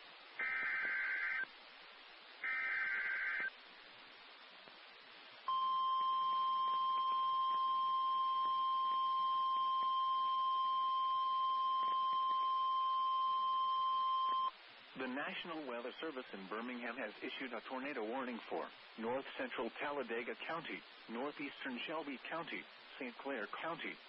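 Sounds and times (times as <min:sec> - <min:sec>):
harsh digital data squawk: 0:00.4 - 0:01.5, 0:02.4 - 0:03.5.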